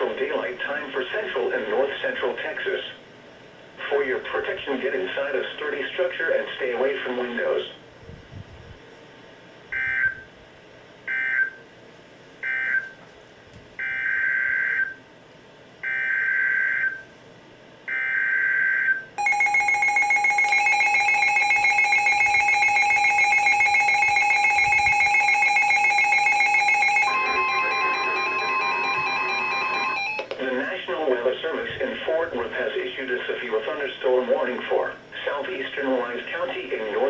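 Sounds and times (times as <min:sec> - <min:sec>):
data bursts: 0:19.2 - 0:30.3
steady tone: 0:19.2 - 0:30.3
two-tone attention signal: 0:19.2 - 0:30.3.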